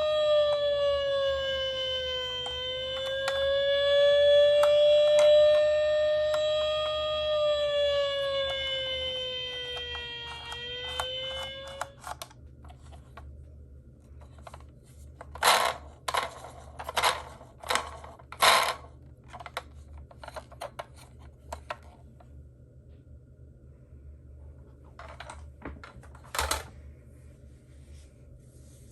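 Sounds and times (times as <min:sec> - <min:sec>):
electronic toy siren wailing: 0:00.0 - 0:12.3.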